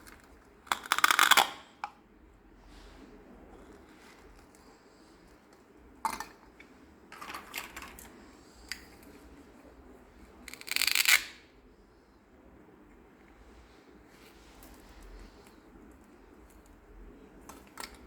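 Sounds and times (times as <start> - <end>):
plastic toy pieces clicking: 0.7 - 1.6, 10.5 - 11.3.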